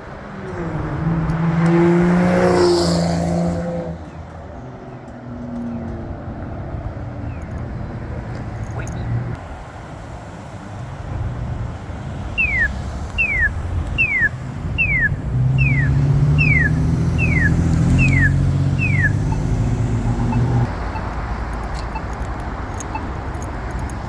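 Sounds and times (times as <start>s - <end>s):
vehicle engine hum: 0.0s - 24.0s
high falling chirp: 12.4s - 23.9s.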